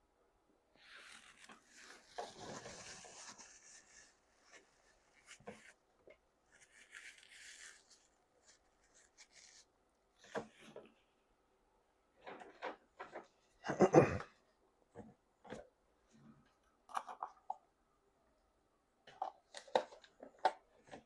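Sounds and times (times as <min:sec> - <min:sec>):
faint rustling and rubbing: 0:00.7 - 0:11.2.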